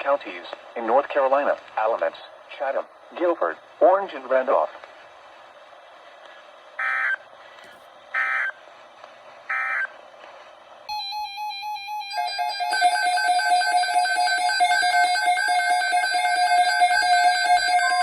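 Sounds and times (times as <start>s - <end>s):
radio hiss: 0.0s - 7.8s.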